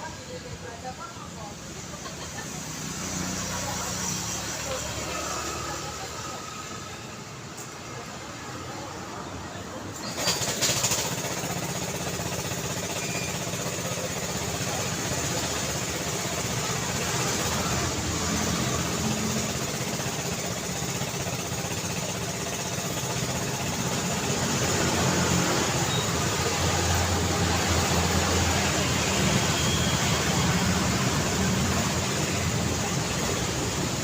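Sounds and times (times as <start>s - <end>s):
city street traffic: 0.0s - 34.0s.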